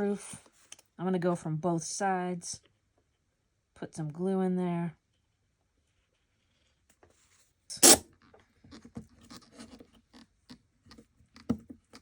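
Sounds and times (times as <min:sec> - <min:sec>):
small light clicks and scratches: 0:05.9 - 0:12.0.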